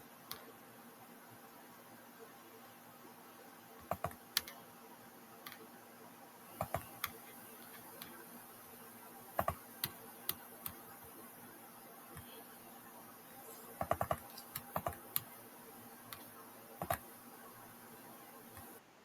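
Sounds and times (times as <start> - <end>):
faint steady hiss: 0.0 - 19.0
keyboard keys clicking: 3.8 - 4.6, 6.6 - 8.2, 9.4 - 10.8, 13.8 - 15.4, 16.1 - 17.1.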